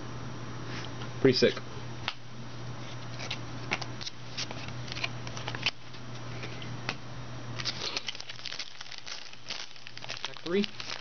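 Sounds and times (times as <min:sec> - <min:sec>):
steady low hum: 0:00.0 - 0:11.0
trading cards clicking and scraping: 0:02.8 - 0:05.8.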